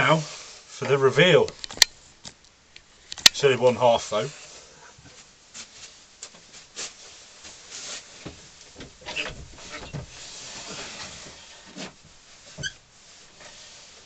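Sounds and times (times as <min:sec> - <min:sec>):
rubbing and scuffing on metal: 0:04.4 - 0:14.0.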